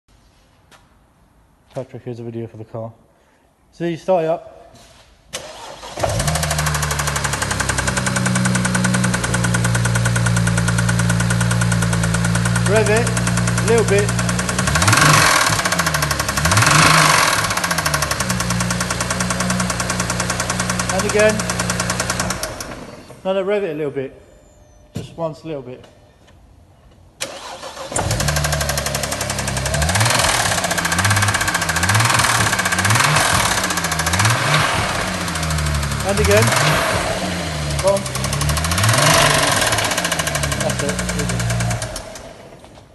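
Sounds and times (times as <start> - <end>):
fast even engine rattle: 5.6 - 23.2, 27.3 - 42.6
car engine idling: 6.1 - 23.2, 27.3 - 42.6.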